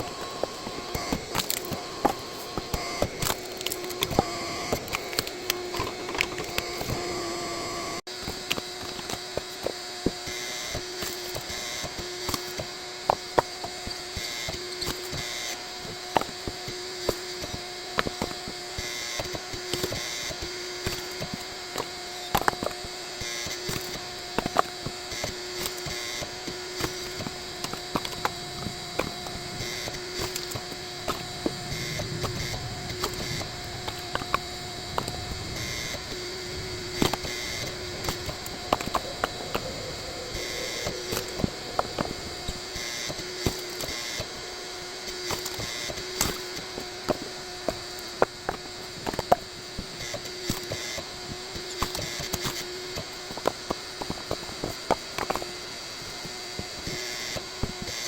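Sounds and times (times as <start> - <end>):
hydraulic log splitter humming: 0.0 - 9.0, 25.6 - 48.2.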